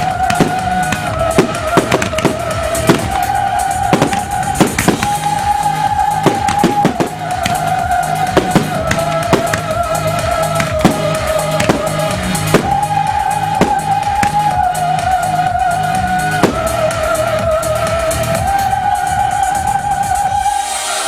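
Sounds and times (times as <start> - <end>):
sharp cracks: 0.0 - 5.6, 6.2 - 14.7, 16.4 - 17.0
electronic music with synth: 0.0 - 21.0.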